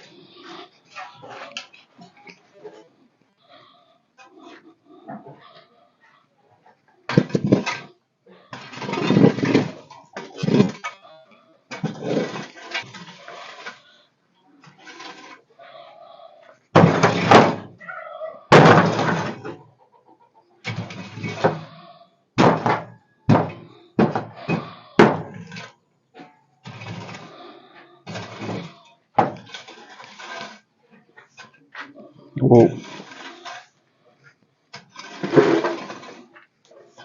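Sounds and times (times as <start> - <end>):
knocks and thuds: 16.8 - 17.8, 22.4 - 25.4.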